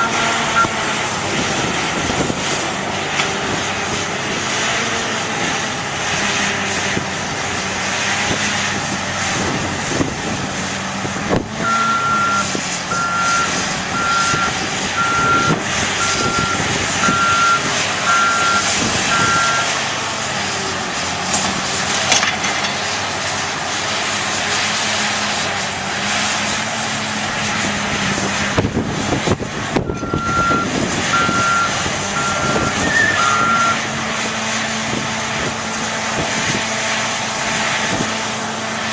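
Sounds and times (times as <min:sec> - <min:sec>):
reversing alarm beeping: 0:00.0 - 0:00.8, 0:11.6 - 0:19.7, 0:29.9 - 0:33.8
diesel engines under load: 0:00.0 - 0:38.9
machinery clanks and knocks: 0:21.2 - 0:23.0.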